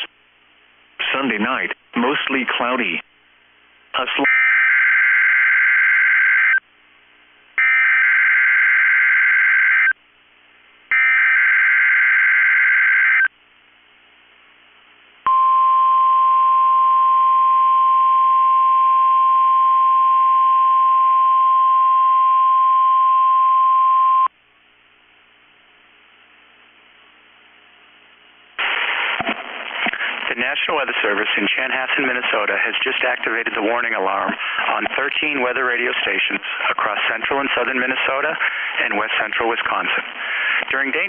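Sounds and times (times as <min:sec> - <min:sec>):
steady alarm tone: 0:07.6 - 0:09.9, 0:10.9 - 0:13.3.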